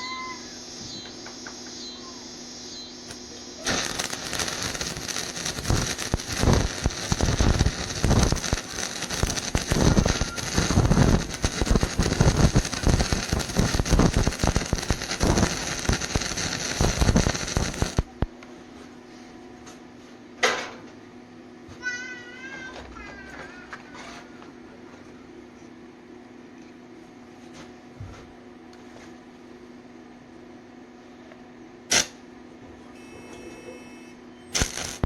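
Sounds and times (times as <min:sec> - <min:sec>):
steady hum: 0:00.0 - 0:19.8, 0:28.4 - 0:35.0
welding arc crackling: 0:01.2 - 0:18.3, 0:31.9 - 0:32.2, 0:34.5 - 0:35.0.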